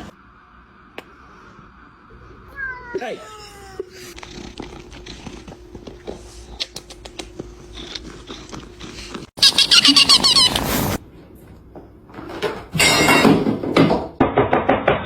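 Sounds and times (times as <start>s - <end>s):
kitten chewing and lip-smacking: 4.1s - 10.6s.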